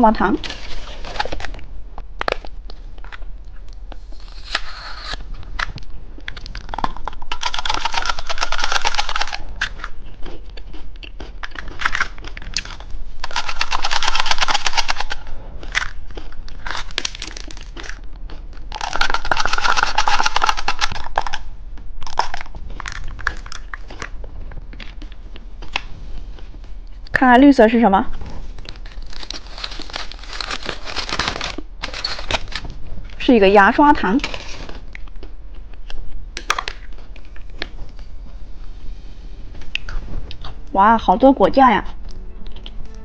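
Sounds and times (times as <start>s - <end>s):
plastic packaging crinkling: 4.2s - 10.0s, 11.4s - 18.0s, 18.7s - 21.4s, 28.5s - 32.7s.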